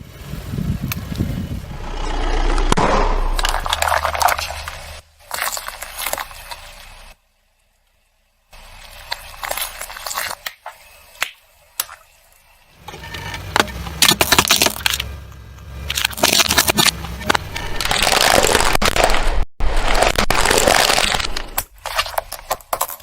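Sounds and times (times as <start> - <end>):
tyres crushing rubber balls: 13.4 - 15.1, 15.8 - 23.0.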